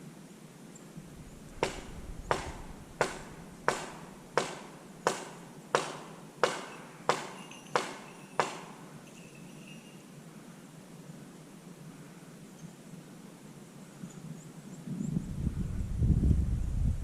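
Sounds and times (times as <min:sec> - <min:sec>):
sharp ringing knocks: 0:01.5 - 0:10.0.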